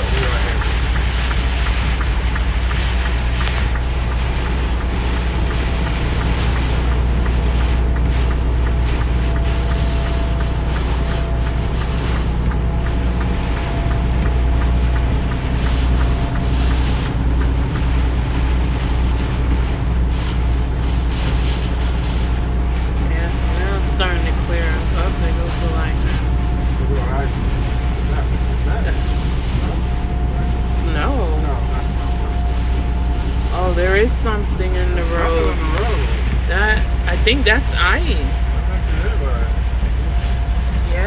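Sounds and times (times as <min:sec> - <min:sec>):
rain and hail on windshield: 0:00.0 - 0:41.0
truck engine and road rumble: 0:00.0 - 0:41.0.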